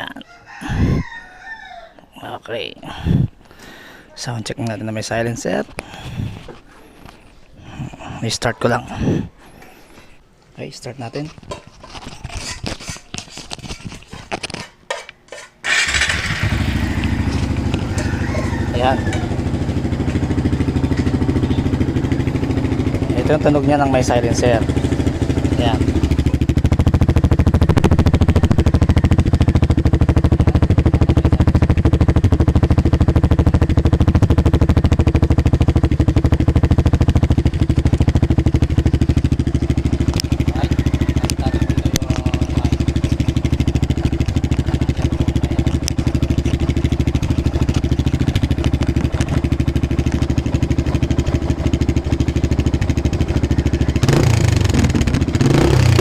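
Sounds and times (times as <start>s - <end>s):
motorcycle engine running: 15.7s - 56.0s.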